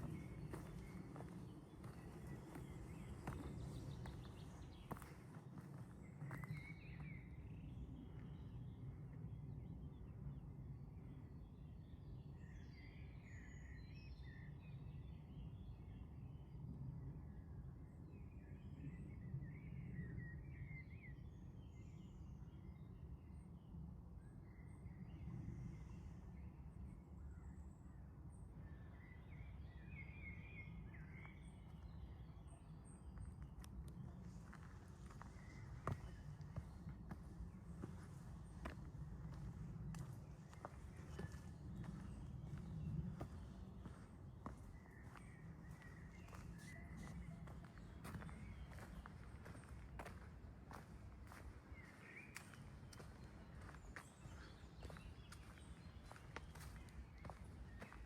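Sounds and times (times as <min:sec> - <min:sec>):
small birds chirping: 0:00.0 - 0:08.7, 0:28.9 - 0:58.0
steady low rumble: 0:33.2 - 0:58.0.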